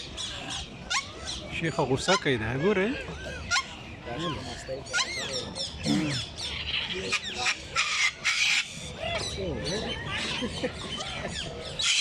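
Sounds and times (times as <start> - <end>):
parrots squawking: 0.0 - 12.0
parrots whistling: 4.4 - 9.4.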